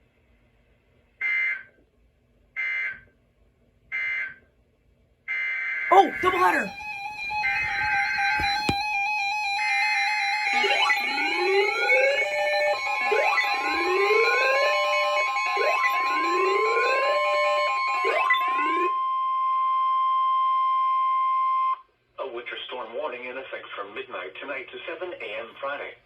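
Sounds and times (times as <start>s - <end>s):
electronic music: 5.9s - 9.0s, 9.6s - 18.9s
steady weather radio alarm tone: 5.9s - 19.2s
rising siren-like sweeps: 9.3s - 18.9s.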